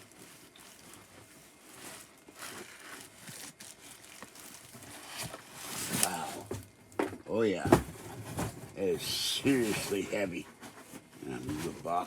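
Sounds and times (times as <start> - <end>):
packaging rustling and crinkling: 0.0 - 6.8.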